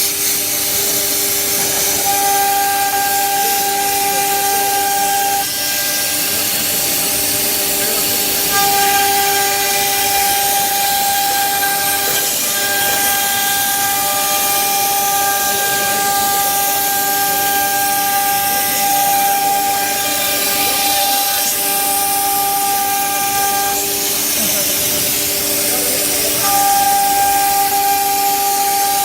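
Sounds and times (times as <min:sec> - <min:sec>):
router spindle whining: 0:00.0 - 0:29.0.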